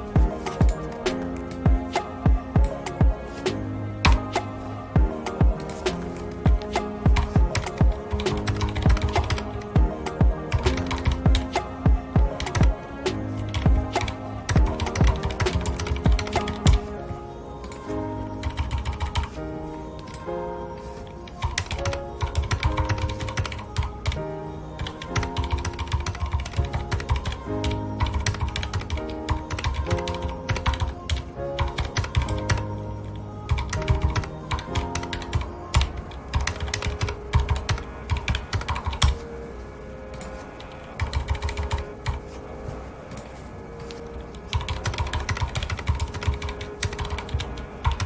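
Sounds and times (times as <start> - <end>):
melodic background music: 0.0 - 48.0
mechanical keyboard typing: 6.6 - 9.7, 18.4 - 19.3, 21.4 - 24.2, 24.8 - 27.4, 28.0 - 32.6, 33.5 - 39.2, 41.0 - 42.2, 44.5 - 48.0.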